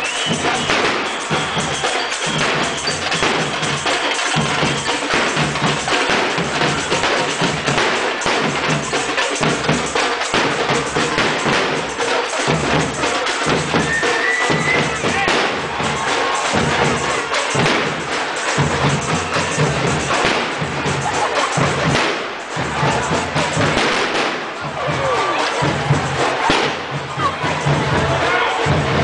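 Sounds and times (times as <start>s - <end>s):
bass drum and snare marching: 0.0s - 29.0s
loud dense din: 0.0s - 29.0s.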